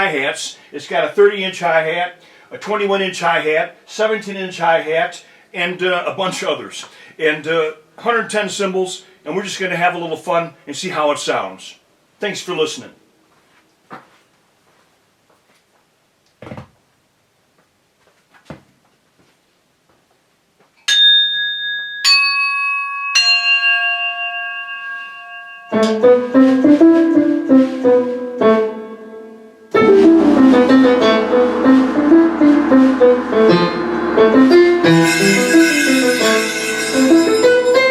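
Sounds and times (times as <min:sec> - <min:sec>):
bell-like keyboard notes: 0:21.0 - 0:27.0, 0:32.6 - 0:37.9
piano chords: 0:24.4 - 0:37.9
bass line: 0:29.7 - 0:37.4.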